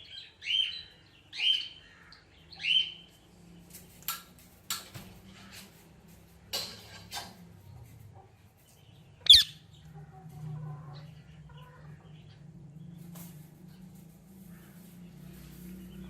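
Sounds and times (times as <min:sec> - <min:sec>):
parrot harsh chirps: 0:09.2 - 0:09.6
parrot loud squawk: 0:09.3 - 0:09.6.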